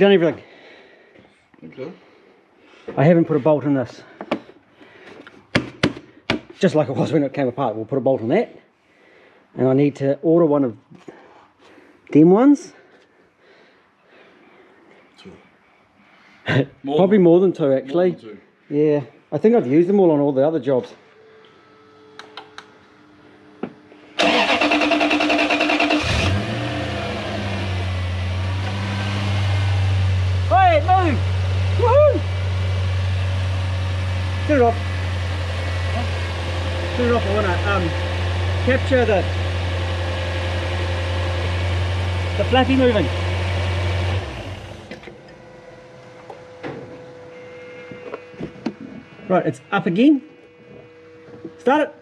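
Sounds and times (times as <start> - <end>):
engine starter cranking: 24.2 - 26.8
car engine idling: 24.2 - 47.5.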